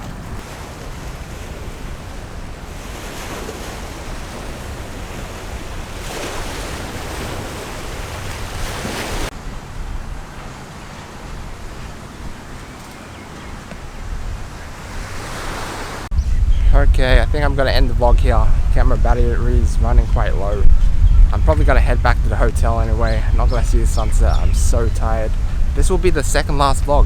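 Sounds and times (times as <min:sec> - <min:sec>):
sea waves on beach: 0:00.0 - 0:16.1, 0:17.2 - 0:27.0
wind buffeting microphone: 0:00.0 - 0:27.0.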